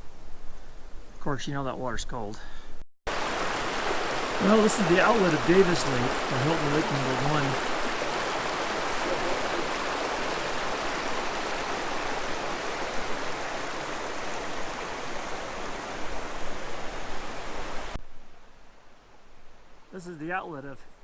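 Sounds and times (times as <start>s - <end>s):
water rushing over rocks: 3.1s - 18.0s.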